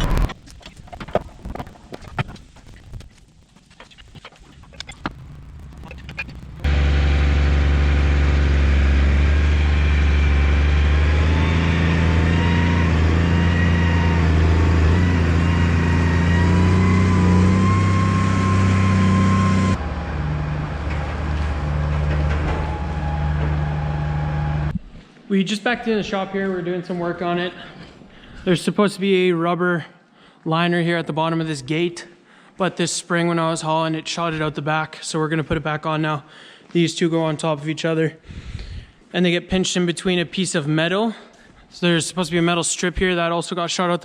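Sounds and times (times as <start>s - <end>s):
tractor engine running: 4.6s - 24.7s.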